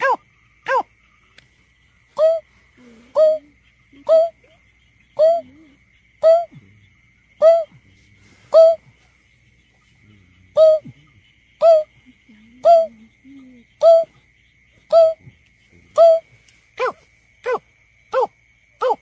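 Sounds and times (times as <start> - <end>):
bird hooting: 2.2 - 4.6, 5.2 - 6.6, 7.4 - 7.8, 8.5 - 8.8, 10.5 - 11.0, 11.6 - 14.1, 14.9 - 15.2, 16.0 - 17.6.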